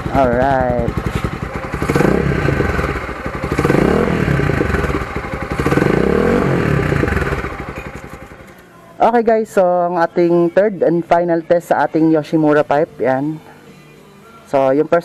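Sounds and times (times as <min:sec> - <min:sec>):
motorcycle engine revving: 0:00.0 - 0:08.6.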